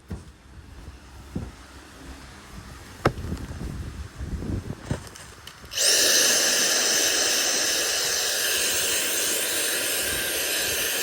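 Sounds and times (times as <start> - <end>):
vacuum cleaner motor whining: 5.7 - 11.0.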